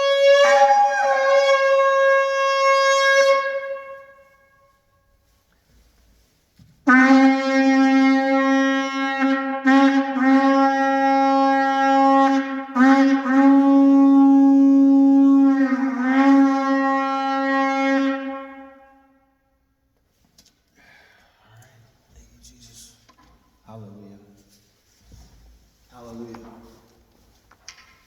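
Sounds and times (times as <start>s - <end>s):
shofar blown in long note: 0.0s - 5.3s, 6.8s - 19.4s.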